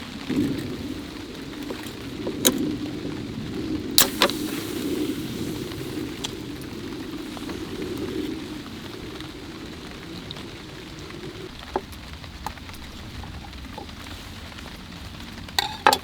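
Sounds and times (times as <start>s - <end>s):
heavy rain: 0.0s - 16.0s.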